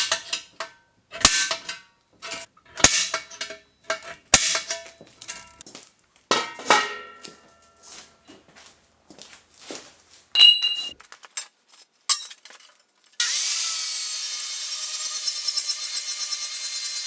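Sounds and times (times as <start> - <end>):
steel clanging: 0.0 - 5.6, 6.3 - 8.0, 10.4 - 12.8
metal clinks: 3.2 - 5.6, 10.4 - 12.8
angle grinder cutting steel: 13.2 - 17.0.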